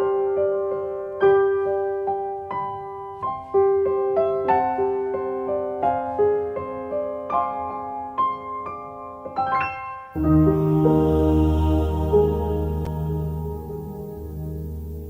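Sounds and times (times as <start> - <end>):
solo piano melody: 0.0 - 15.0
ambient music low drone: 10.2 - 15.0.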